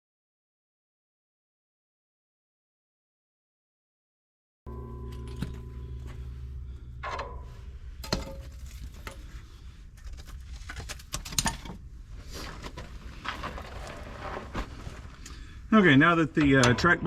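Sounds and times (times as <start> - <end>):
low steady hum: 4.7 - 17.0
metal tools clinking and knocking: 5.0 - 11.8.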